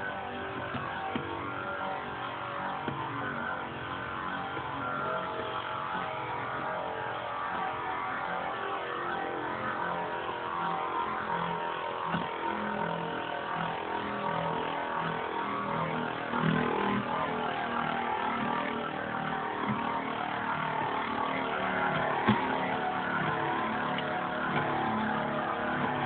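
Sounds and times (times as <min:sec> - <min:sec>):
spinning tops whirring: 0:11.0 - 0:26.0.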